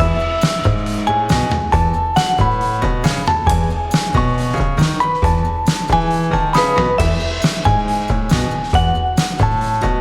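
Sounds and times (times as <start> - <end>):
steady drum beat: 0.0 - 10.0
upbeat piano tune: 0.0 - 10.0.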